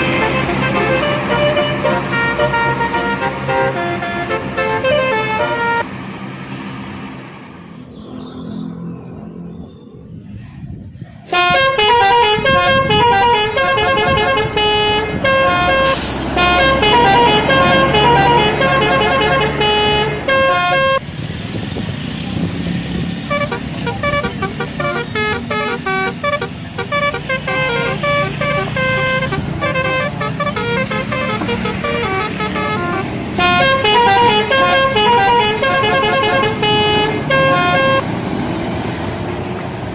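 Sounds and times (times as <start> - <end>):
multi-tone air horn melody: 0.0 - 5.9, 11.3 - 21.0, 23.3 - 38.1
low engine rumble: 8.6 - 39.9.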